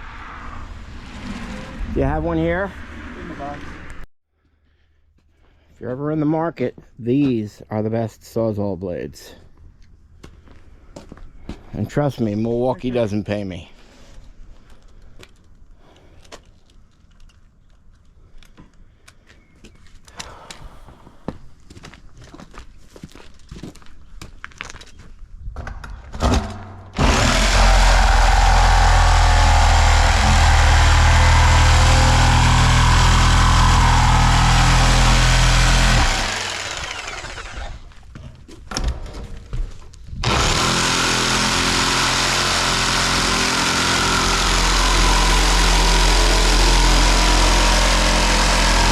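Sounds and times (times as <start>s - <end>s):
reciprocating saw cutting steel: 27.0s - 37.9s, 40.2s - 48.9s.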